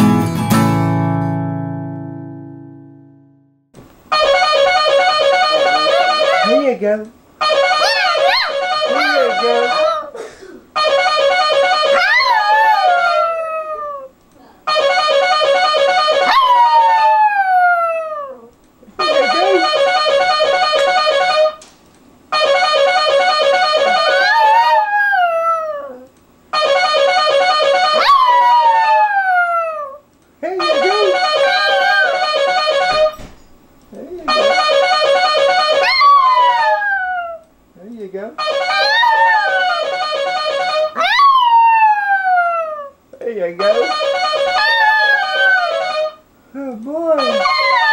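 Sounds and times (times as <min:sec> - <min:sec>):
dog howling: 0:07.7 - 0:10.1, 0:11.9 - 0:14.1, 0:16.2 - 0:18.5, 0:23.8 - 0:26.1, 0:28.0 - 0:30.0, 0:31.4 - 0:32.3, 0:35.8 - 0:37.4, 0:38.6 - 0:40.0, 0:41.0 - 0:43.0, 0:44.5 - 0:46.2, 0:47.2 - 0:47.9
short electronic tune: 0:08.6 - 0:10.0, 0:19.0 - 0:21.5.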